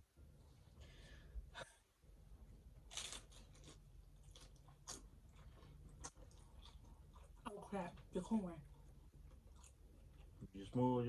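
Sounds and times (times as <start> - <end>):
faint rustling of food: 2.5 - 11.0.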